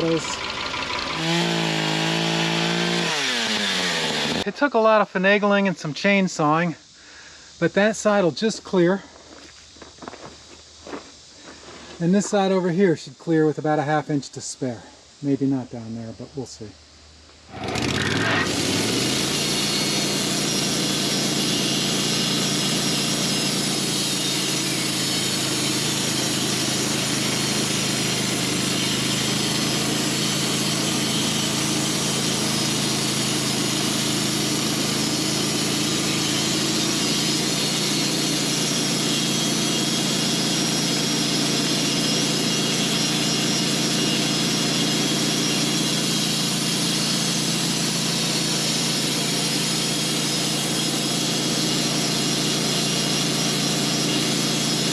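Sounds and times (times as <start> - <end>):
saw blade cutting log: 0.0 - 4.5, 17.5 - 54.9
sawmill engine running: 0.0 - 4.6, 17.5 - 54.9.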